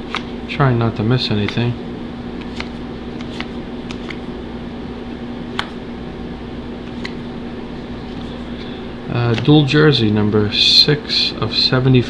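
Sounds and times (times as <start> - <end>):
cards clicking and tapping: 0.0 - 0.4, 1.2 - 1.7, 2.4 - 4.3, 5.5 - 5.8, 6.8 - 7.2, 9.3 - 9.6
steady background hum: 0.0 - 12.0.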